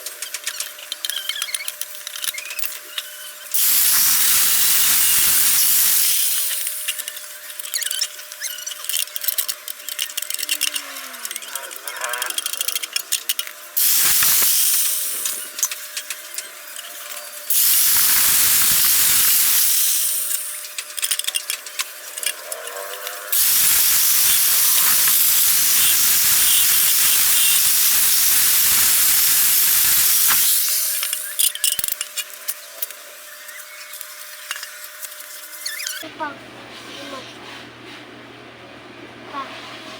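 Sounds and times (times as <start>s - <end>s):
pressurised air hissing: 3.6s - 6.9s, 13.8s - 15.6s, 17.5s - 20.6s, 23.3s - 31.4s.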